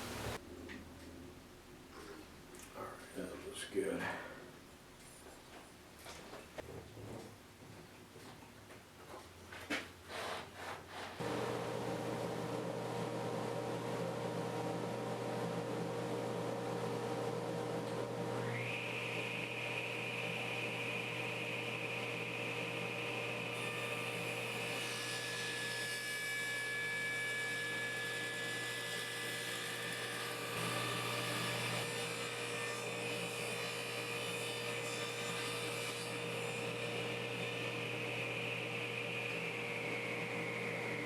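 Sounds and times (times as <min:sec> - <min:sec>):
table saw humming: 0:11.2 - 0:41.0.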